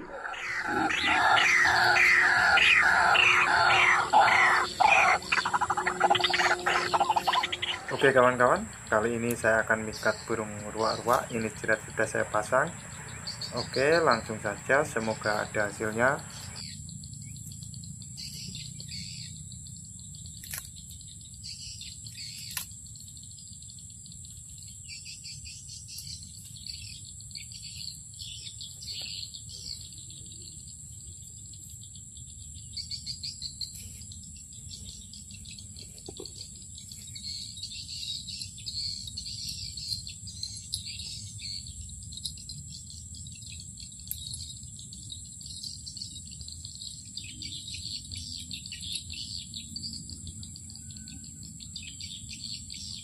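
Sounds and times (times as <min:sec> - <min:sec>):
insect drone: 0:00.0 - 0:53.0
small birds chirping: 0:00.0 - 0:53.0.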